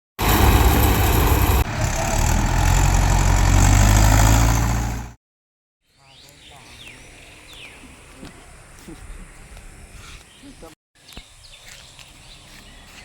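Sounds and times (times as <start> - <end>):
heavy diesel engine running: 0.2 - 5.2.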